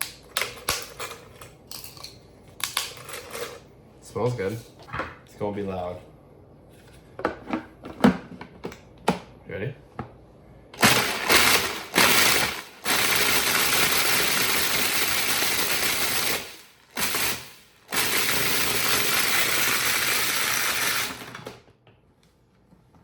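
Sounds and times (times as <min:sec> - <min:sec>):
food processor blending: 0:10.8 - 0:21.6.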